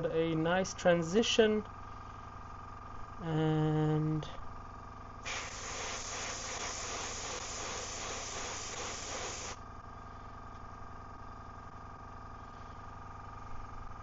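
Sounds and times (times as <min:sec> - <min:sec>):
background hum: 0:00.0 - 0:14.0
airbrush spraying hiss: 0:05.2 - 0:09.6.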